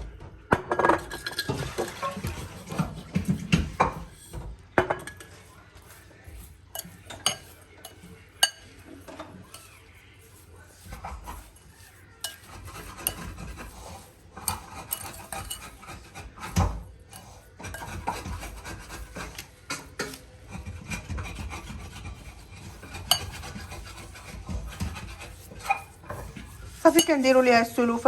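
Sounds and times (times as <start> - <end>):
rasping stirring in a bowl: 0.5 - 28.0.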